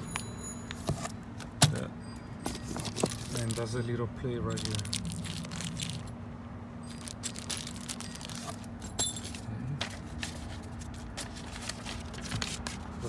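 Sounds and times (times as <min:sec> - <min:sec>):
steady low hum: 0:00.0 - 0:13.0
small metal parts clinking: 0:01.8 - 0:03.9, 0:04.5 - 0:06.2, 0:06.8 - 0:10.6.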